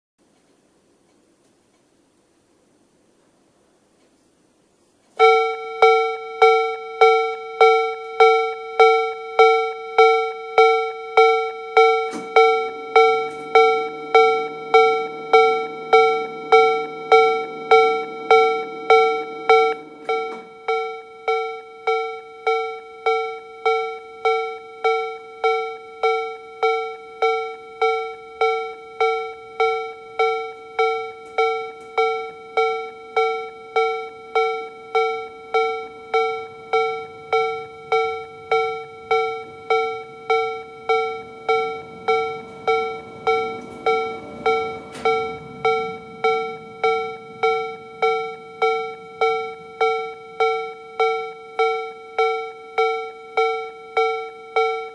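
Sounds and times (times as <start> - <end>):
level crossing alarm bell: 5.1 - 54.9.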